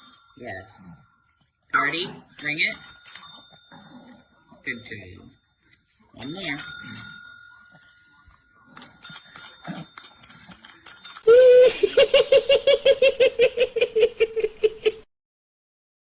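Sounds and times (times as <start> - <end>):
service bell dinging: 6.2 - 8.2
rapid high-pitched laugh: 11.5 - 15.0.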